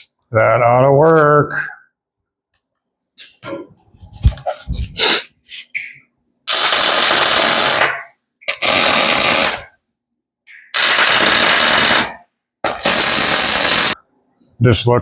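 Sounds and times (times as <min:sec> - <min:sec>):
crackling welding arc: 0:06.5 - 0:09.7, 0:10.6 - 0:14.0.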